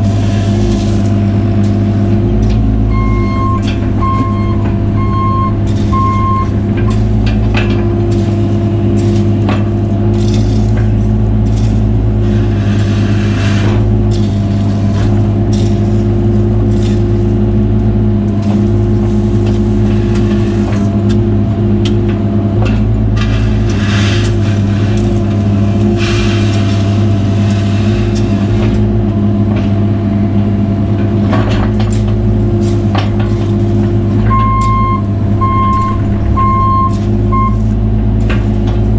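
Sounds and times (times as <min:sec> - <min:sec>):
excavator diesel engine running: 0:00.0 - 0:38.9
travel alarm beeps: 0:02.9 - 0:06.6, 0:34.3 - 0:37.7.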